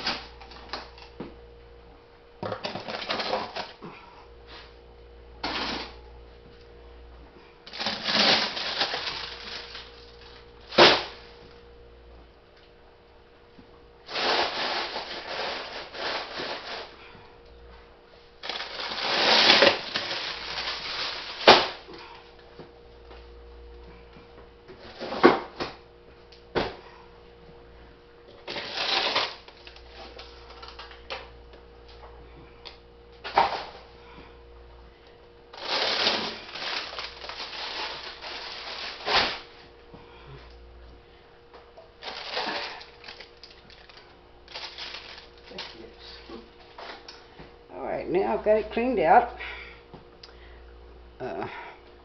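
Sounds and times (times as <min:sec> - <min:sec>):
plastic bags rustling: 0:00.0 - 0:01.0, 0:02.6 - 0:03.8, 0:07.7 - 0:11.3, 0:14.0 - 0:17.1, 0:18.4 - 0:22.0, 0:28.4 - 0:31.0, 0:35.5 - 0:39.7, 0:42.0 - 0:47.0
faint freezer hum: 0:00.0 - 0:52.0.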